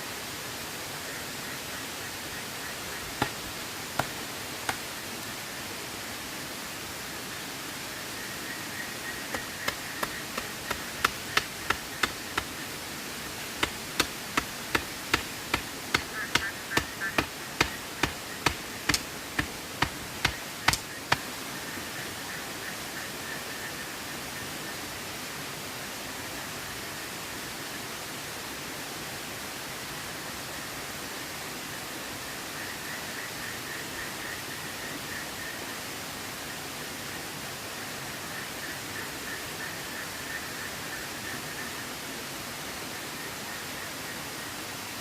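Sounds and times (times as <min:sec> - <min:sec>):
flowing water rushing: 0:00.0 - 0:32.5
sharp chopping knocks: 0:03.2 - 0:03.4, 0:04.0 - 0:04.8, 0:09.3 - 0:12.5, 0:13.6 - 0:21.2.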